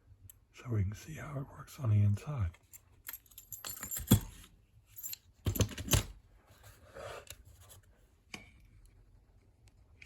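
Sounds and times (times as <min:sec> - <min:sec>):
metal clicks of lock and keys: 0:02.8 - 0:04.4, 0:05.0 - 0:06.1.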